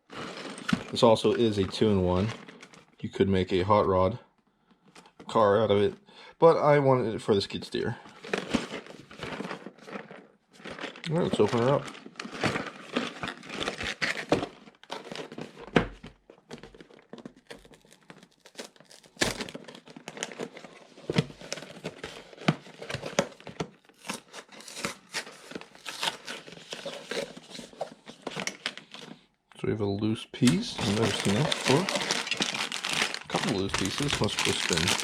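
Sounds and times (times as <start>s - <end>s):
packaging crinkling: 0.0s - 3.0s, 8.1s - 15.7s, 16.5s - 29.2s, 30.4s - 35.0s
cardboard box being torn open: 16.9s - 20.7s, 21.4s - 27.8s, 30.7s - 35.0s.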